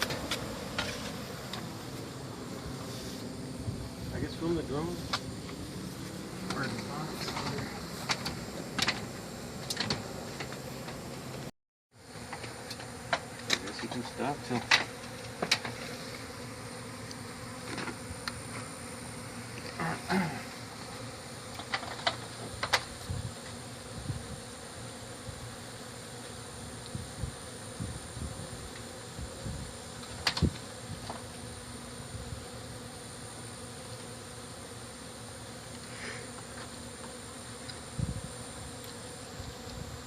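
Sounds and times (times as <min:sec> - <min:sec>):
honeybees buzzing: 0:00.0 - 0:40.0
sharp clicks and knocks: 0:06.5 - 0:11.0.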